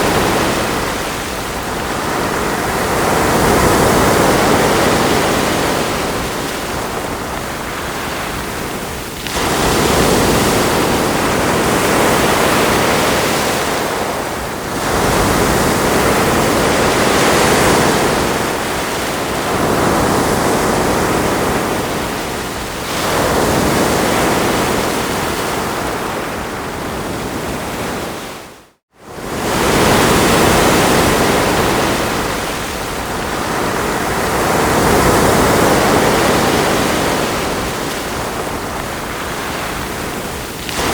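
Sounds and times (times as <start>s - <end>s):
ocean waves breaking on shore: 0.0s - 40.9s.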